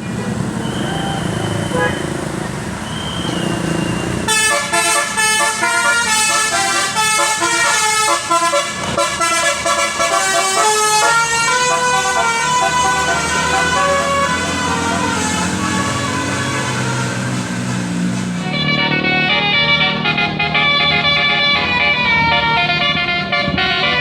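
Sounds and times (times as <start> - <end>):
musical air horn melody: 4.3 - 17.7, 18.4 - 24.0.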